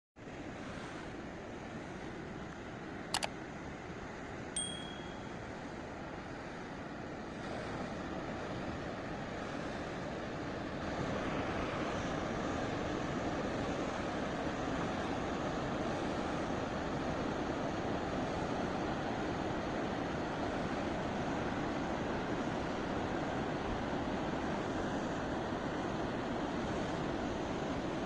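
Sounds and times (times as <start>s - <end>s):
quick clicks: 3.1s - 3.3s
short metallic ting: 4.6s - 5.4s.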